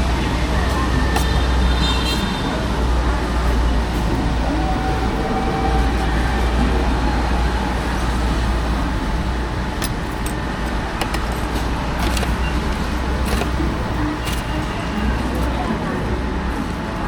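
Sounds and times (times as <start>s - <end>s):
low traffic rumble: 0.0s - 17.0s.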